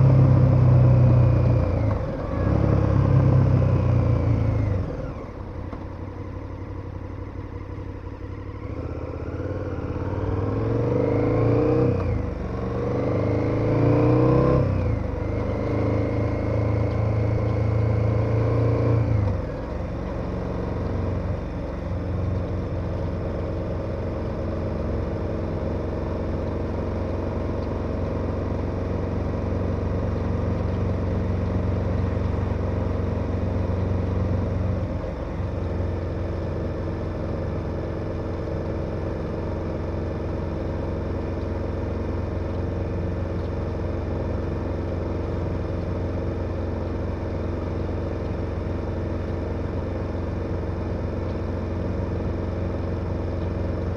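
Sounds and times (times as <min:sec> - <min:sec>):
motorcycle engine running: 0:00.0 - 0:53.9.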